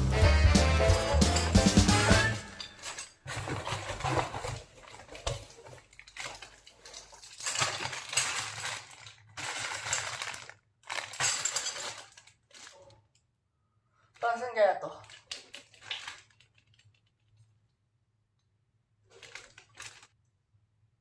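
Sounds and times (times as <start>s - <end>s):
metallic clinking and rattling: 0.8s - 12.8s.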